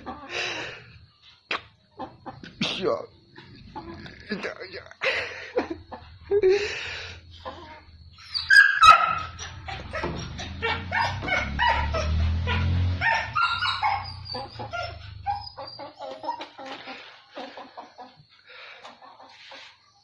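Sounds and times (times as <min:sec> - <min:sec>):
animal yelps and squawks: 0:07.4 - 0:16.9.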